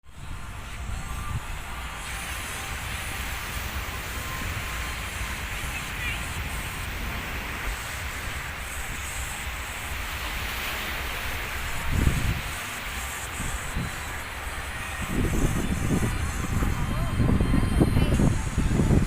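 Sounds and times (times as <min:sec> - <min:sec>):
outdoor noise: 0:00.0 - 0:19.0
wind rumbling on microphone: 0:00.0 - 0:19.0.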